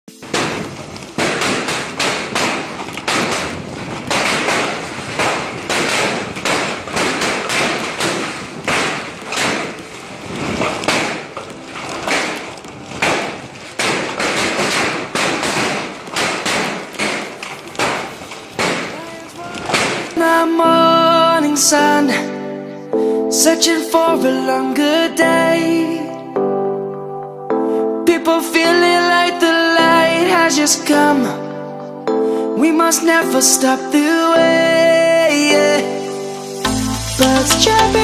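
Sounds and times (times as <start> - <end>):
hailstones pelting hard surfaces: 0.1 - 20.5
storm hiss: 35.4 - 38.0.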